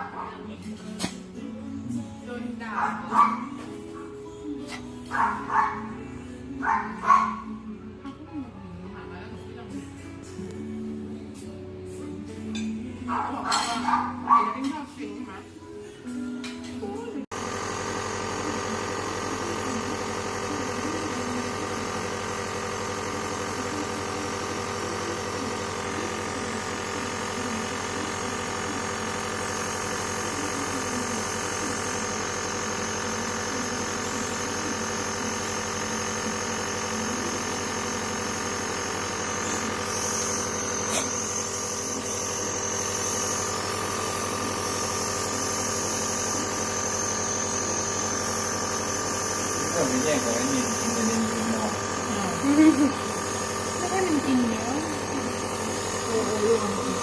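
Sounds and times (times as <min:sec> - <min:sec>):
nebulizer motor humming: 0:17.3 - 0:57.0.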